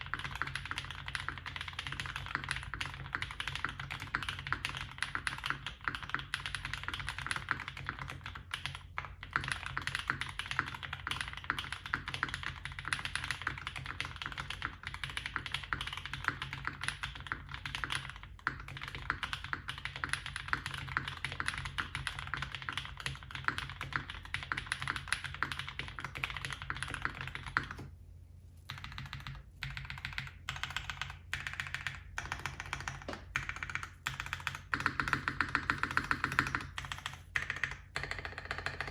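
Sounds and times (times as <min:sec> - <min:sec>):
mechanical keyboard typing: 0:00.0 - 0:27.9, 0:28.7 - 0:38.9.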